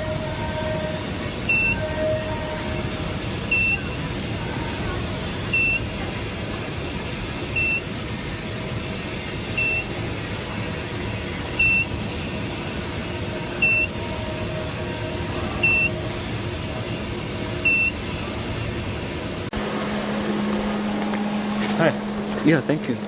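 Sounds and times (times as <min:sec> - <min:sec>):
machine whirring: 0:00.0 - 0:23.0
short high electronic beep: 0:01.4 - 0:02.4, 0:03.5 - 0:04.0, 0:13.6 - 0:14.1, 0:15.6 - 0:16.0, 0:19.5 - 0:23.0.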